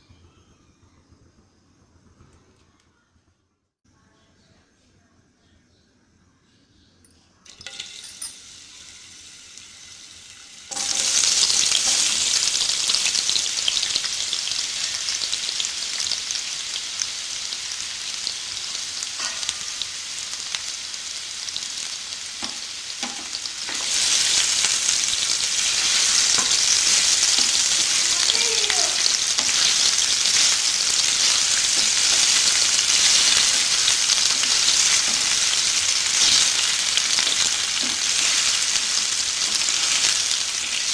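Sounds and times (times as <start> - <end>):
potatoes sizzling in hot oil: 7.5 - 40.9.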